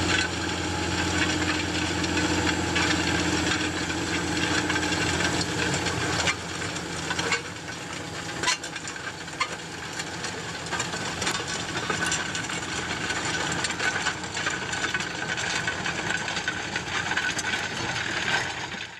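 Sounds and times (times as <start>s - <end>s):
discs scraping soil: 0.0s - 13.9s
tractor engine: 0.0s - 18.9s.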